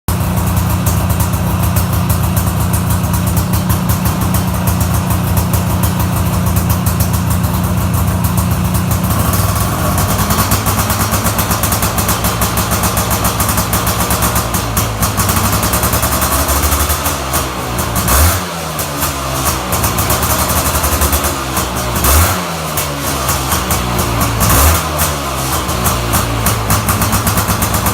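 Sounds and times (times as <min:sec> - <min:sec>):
two-stroke engine revving: 0:00.1 - 0:27.9.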